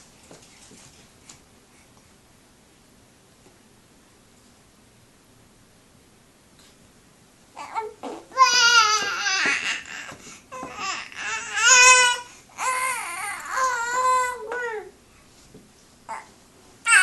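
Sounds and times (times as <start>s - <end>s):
baby making high-pitched calls: 7.6s - 14.9s.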